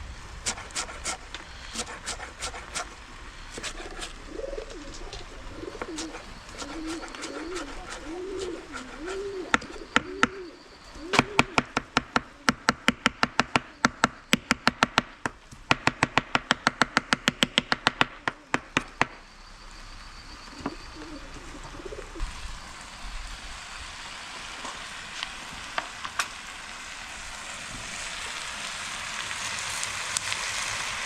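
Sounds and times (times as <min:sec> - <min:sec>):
dove cooing: 0:00.4 - 0:12.9, 0:18.0 - 0:18.6, 0:20.2 - 0:22.4.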